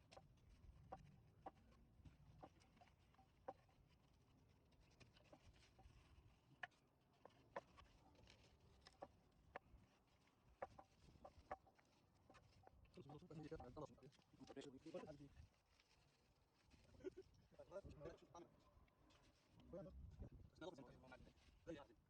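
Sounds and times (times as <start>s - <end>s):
faint clicks and taps: 0.0s - 17.0s.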